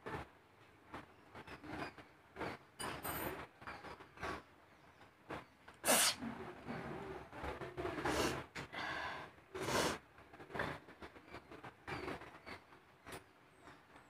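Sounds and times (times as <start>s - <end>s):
woman sneezing: 5.9s - 6.2s.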